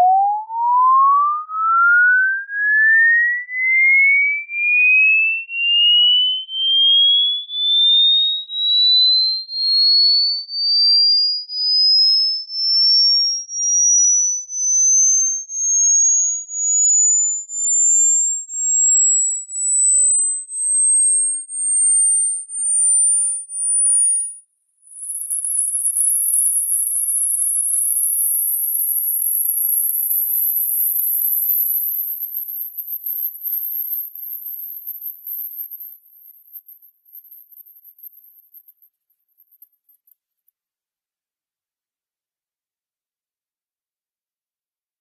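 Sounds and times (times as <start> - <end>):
sine tone gliding upward: 0.0 - 10.1.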